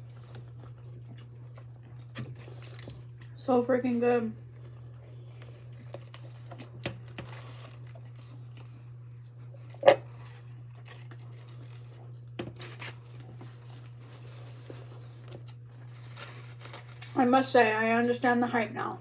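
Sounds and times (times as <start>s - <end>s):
steady low hum: 0.0s - 19.0s
food packaging rustling: 5.3s - 8.4s, 10.2s - 17.3s.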